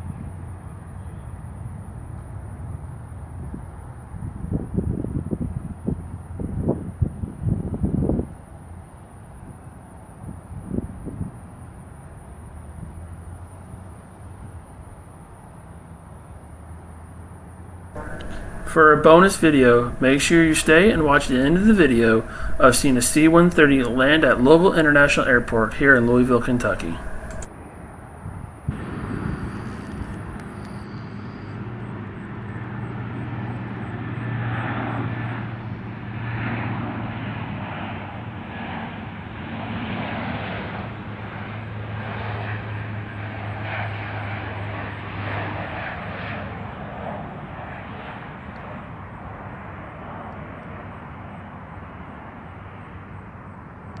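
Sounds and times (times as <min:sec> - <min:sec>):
low hum: 0:18.0 - 0:27.5
turboprop engines droning: 0:18.0 - 0:27.5.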